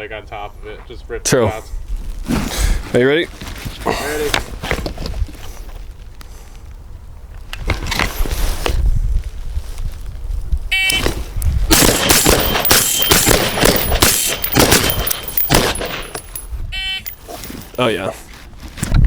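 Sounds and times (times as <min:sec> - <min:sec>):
suppressed rifle shots: 0:10.9 - 0:16.3.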